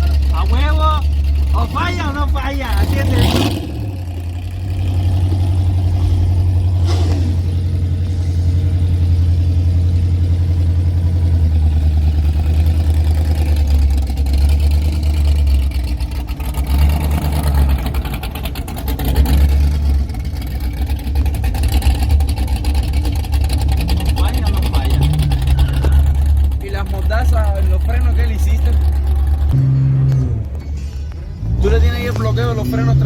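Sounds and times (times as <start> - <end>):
car engine drone: 0.0 - 33.0.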